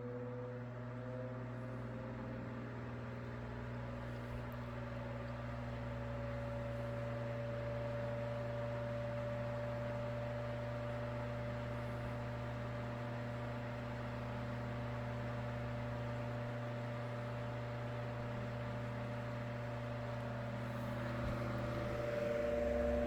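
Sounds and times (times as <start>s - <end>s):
table fan motor humming: 17.2s - 23.0s
air rushing through fan blades: 20.5s - 23.0s.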